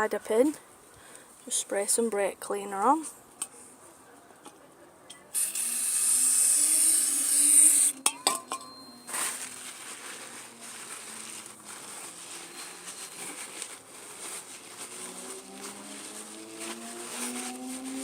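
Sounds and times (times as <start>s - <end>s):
light metallic clink: 8.0s - 9.2s.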